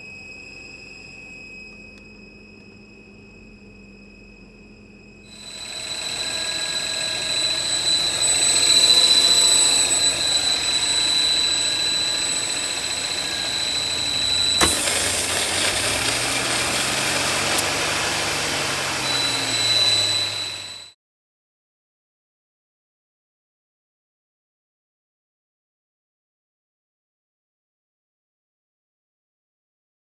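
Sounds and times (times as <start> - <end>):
high-pitched whistle: 0.0 - 21.0
car engine running: 14.6 - 19.6.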